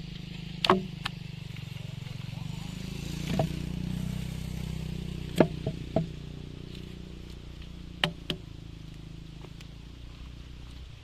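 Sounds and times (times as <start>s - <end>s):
chainsaw idling: 0.0s - 10.9s
sharp knocks: 0.6s - 0.9s, 3.2s - 3.6s, 5.3s - 6.2s.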